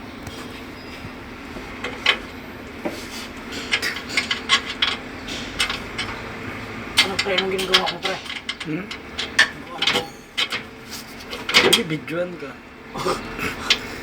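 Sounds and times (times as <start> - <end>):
steady low hum: 0.0 - 14.0
metal tools clinking: 3.5 - 12.0.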